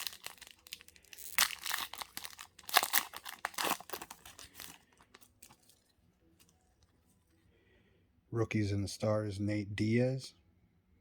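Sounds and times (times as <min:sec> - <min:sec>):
card wrapper tearing and crinkling: 0:00.0 - 0:05.8.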